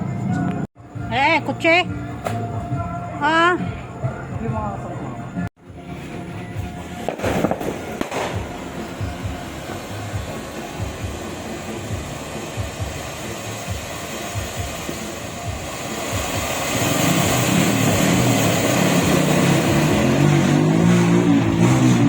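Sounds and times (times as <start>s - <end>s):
street noise: 0.0s - 22.0s
distant fireworks thudding: 5.8s - 21.4s
car passing by: 7.1s - 22.0s.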